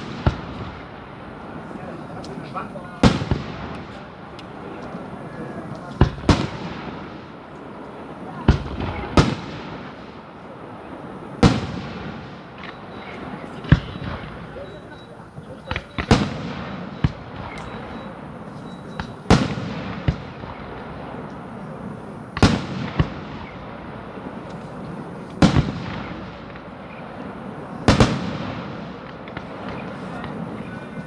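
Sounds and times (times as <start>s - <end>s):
fireworks bangs with echo: 0.0s - 31.0s
small fireworks pops: 0.0s - 31.0s.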